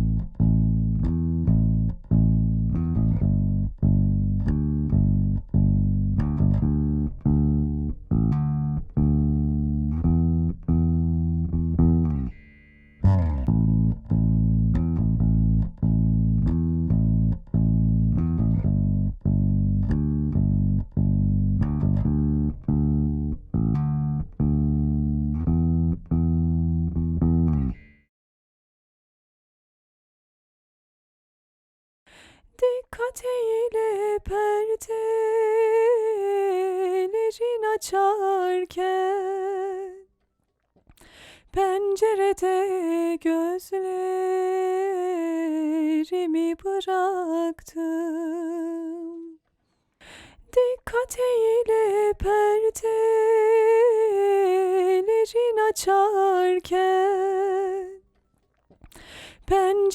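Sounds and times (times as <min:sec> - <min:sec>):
electric bass guitar riff: 0:00.0 - 0:28.1.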